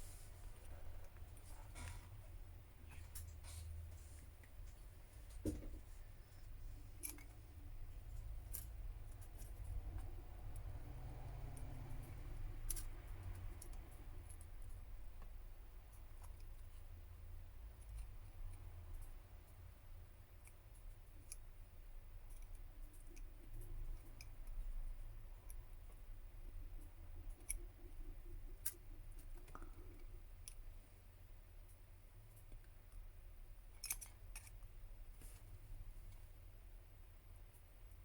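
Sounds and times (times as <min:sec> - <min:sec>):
low steady hum: 0:00.0 - 0:38.0
small hand tools clicking and scraping: 0:11.5 - 0:14.5.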